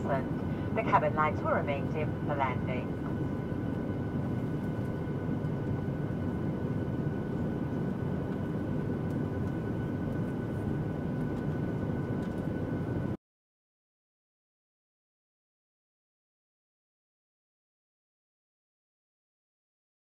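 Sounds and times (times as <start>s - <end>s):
faint steady tones: 0.0s - 13.1s
jet engine cabin drone: 0.0s - 13.2s.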